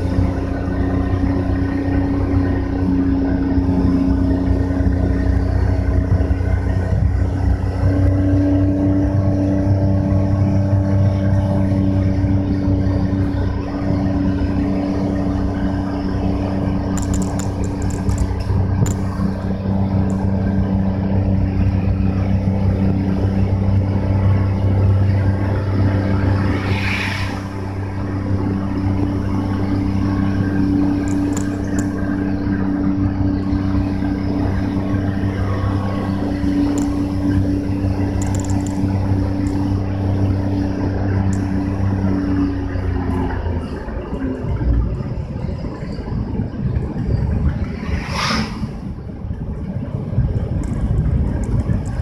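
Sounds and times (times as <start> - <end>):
car engine hum: 0.0 - 52.0
road noise: 0.0 - 52.0
brief rushing hiss: 47.8 - 48.8.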